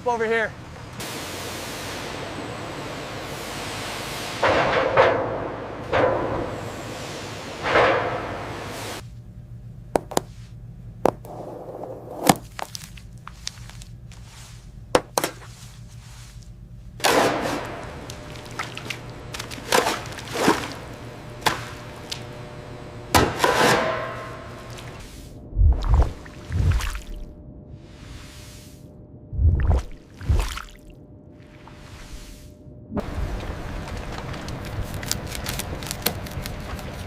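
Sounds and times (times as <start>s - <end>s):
steady low hum: 5.4s - 37.0s
sharp knocks and chopping thuds: 23.1s - 24.2s.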